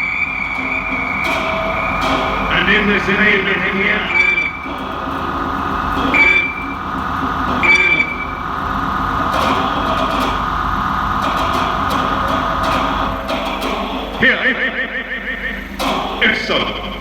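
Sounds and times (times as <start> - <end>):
short high squealing tones: 0.0 - 2.6, 3.8 - 4.8, 6.0 - 8.6
rumbling rattling electronic drone: 0.0 - 17.0
steady high tone: 0.0 - 17.0.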